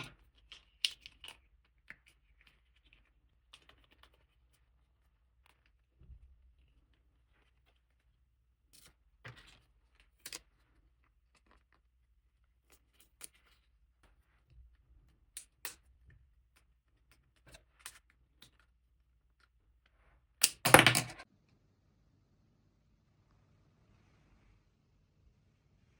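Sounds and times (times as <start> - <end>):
plastic toy clicks and taps: 20.4 - 21.2.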